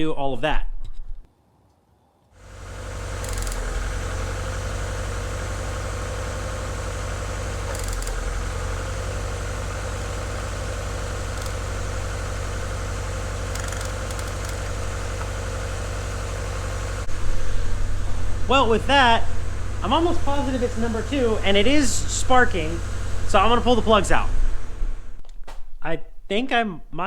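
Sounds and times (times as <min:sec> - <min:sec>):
car engine idling with misfire: 0:02.4 - 0:25.2
brief clicks: 0:03.2 - 0:03.7, 0:07.7 - 0:08.2, 0:11.3 - 0:11.6, 0:13.5 - 0:15.3.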